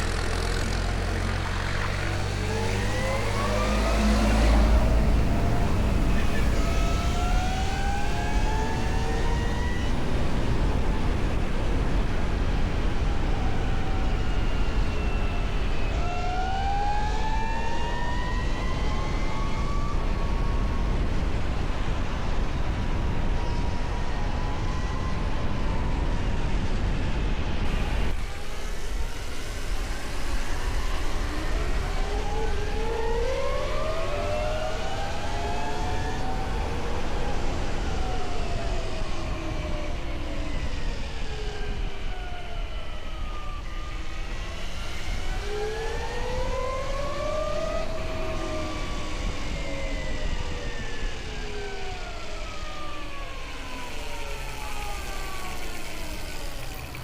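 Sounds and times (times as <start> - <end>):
steady rushing noise: 43.4 - 57.0
electric motor whining: 52.7 - 57.0.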